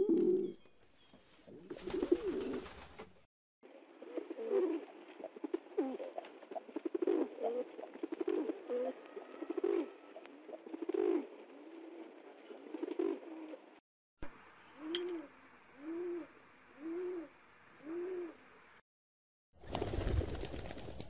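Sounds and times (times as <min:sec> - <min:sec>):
pigeons cooing: 0:00.0 - 0:00.6, 0:03.9 - 0:13.7, 0:14.8 - 0:18.5.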